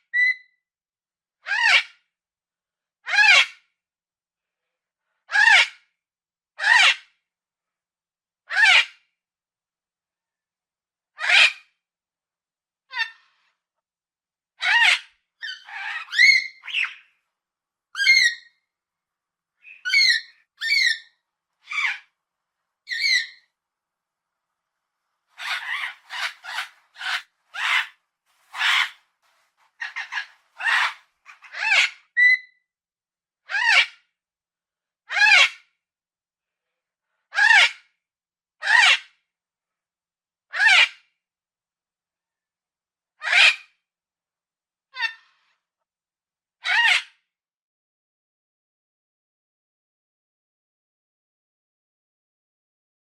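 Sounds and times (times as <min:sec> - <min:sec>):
parrot squawking: 0:11.2 - 0:11.6, 0:14.6 - 0:17.0, 0:18.0 - 0:18.5, 0:19.6 - 0:22.1, 0:22.9 - 0:23.4, 0:25.4 - 0:29.0, 0:29.8 - 0:32.5, 0:33.5 - 0:33.9, 0:35.1 - 0:35.5, 0:38.6 - 0:39.0, 0:40.6 - 0:40.9, 0:43.2 - 0:43.6, 0:46.6 - 0:47.1.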